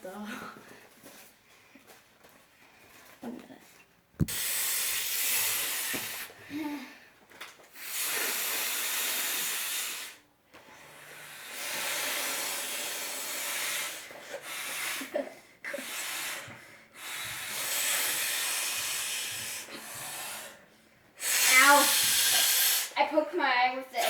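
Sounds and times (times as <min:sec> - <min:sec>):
air hissing into inflatable: 0:04.2 - 0:06.4, 0:07.7 - 0:10.2, 0:10.9 - 0:20.6, 0:21.2 - 0:23.0.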